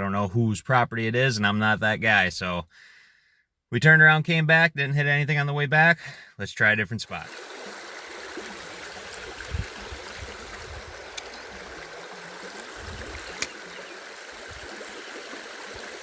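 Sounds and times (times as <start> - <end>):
stream water rushing: 7.2 - 16.0
sharp clicks: 10.9 - 11.5, 12.5 - 13.8.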